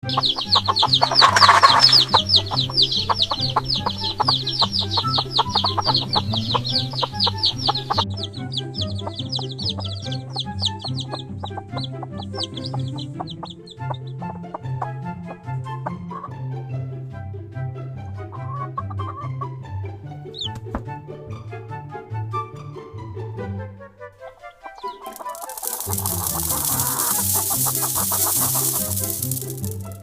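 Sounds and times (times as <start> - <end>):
chicks peeping: 0.0 - 14.9, 15.8 - 16.3, 20.4 - 20.6, 24.7 - 30.0.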